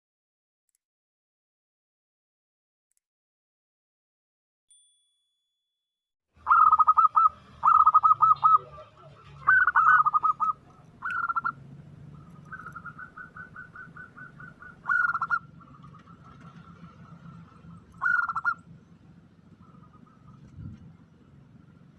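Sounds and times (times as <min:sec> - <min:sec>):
dove cooing: 0:06.4 - 0:18.7.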